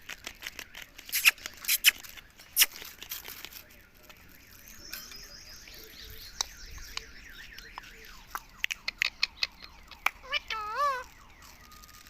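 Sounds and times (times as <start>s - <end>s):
sharp clicks: 6.4s - 10.4s
parakeet chattering: 8.8s - 11.1s.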